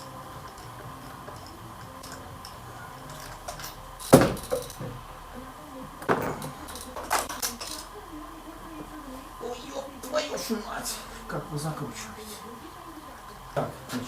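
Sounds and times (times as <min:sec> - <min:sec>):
metal hand tools clinking: 0:00.0 - 0:04.9, 0:06.1 - 0:07.9.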